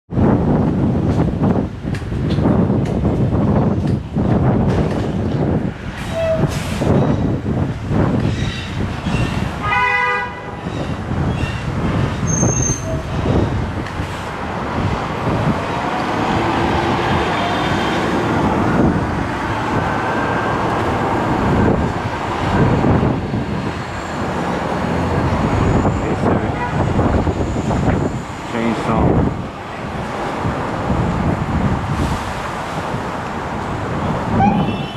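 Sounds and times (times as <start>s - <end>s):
city traffic: 0.1s - 34.9s
wind buffeting microphone: 0.1s - 34.9s
vehicle horn toot: 9.6s - 10.6s, 34.4s - 34.9s.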